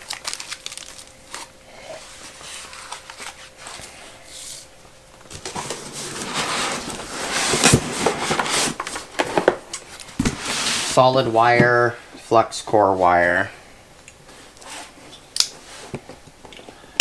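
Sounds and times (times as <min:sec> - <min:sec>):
cardboard boxes rustling: 0:00.3 - 0:12.2.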